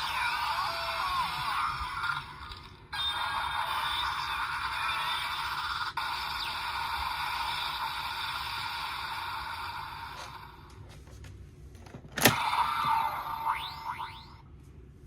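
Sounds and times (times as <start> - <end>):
electronic toy hiss: 3.0 - 10.4.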